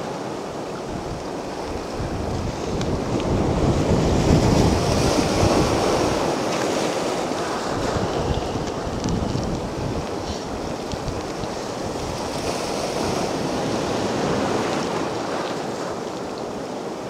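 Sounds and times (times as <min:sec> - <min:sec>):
sea waves breaking on beach: 0:00.0 - 0:17.0
wind buffeting microphone: 0:00.0 - 0:17.0.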